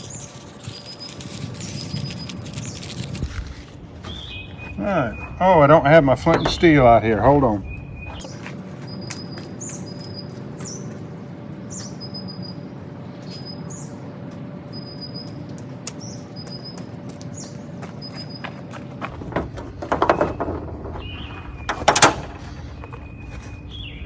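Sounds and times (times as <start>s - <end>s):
small bird chirping: 0.0s - 3.2s, 7.7s - 19.0s
steady background hum: 0.0s - 24.0s.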